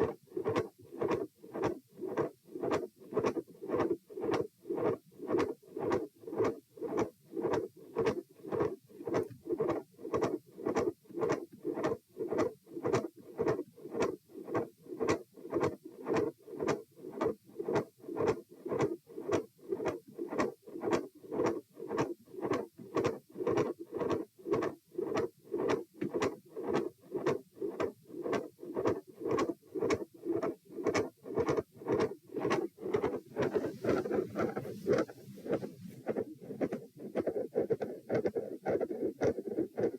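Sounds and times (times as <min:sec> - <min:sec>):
heartbeat through stethoscope: 0:00.0 - 0:39.9
rustling: 0:31.8 - 0:37.4.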